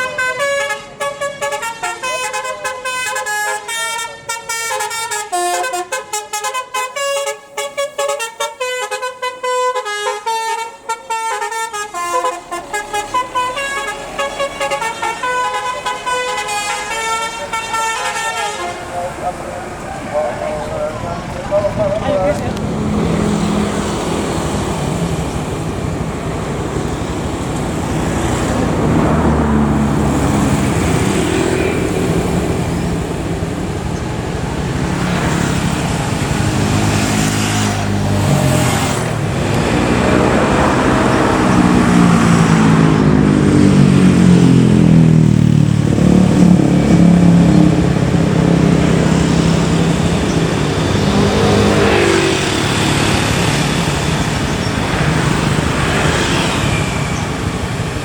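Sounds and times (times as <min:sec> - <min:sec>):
multi-tone air horn tune: 0:00.0 - 0:20.5
bus engine and road noise: 0:00.0 - 0:58.0.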